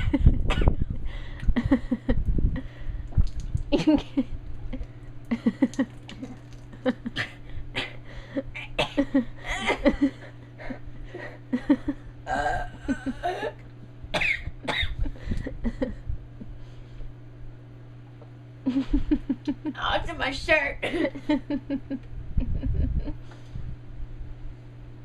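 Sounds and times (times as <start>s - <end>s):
person coughing: 0.5s - 0.8s, 8.6s - 9.8s, 14.2s - 15.0s, 20.8s - 21.2s
person gulping soda: 3.0s - 7.4s.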